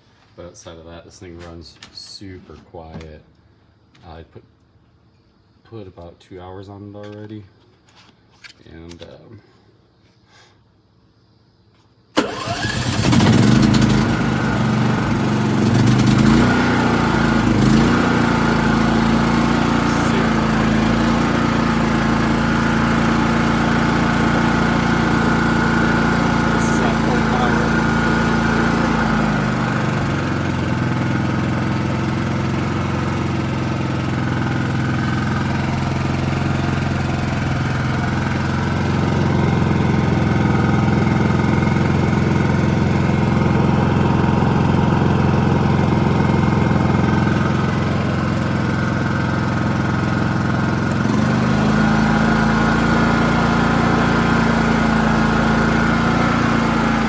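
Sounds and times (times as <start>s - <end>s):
generator engine running: 12.2s - 57.0s.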